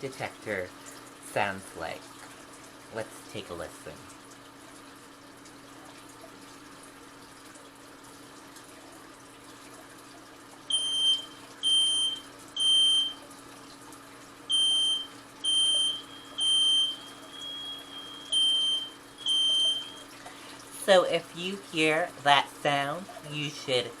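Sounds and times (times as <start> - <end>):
faint room hum: 0.0 - 24.0
smoke detector alarm beeps: 10.7 - 13.3, 14.5 - 20.1.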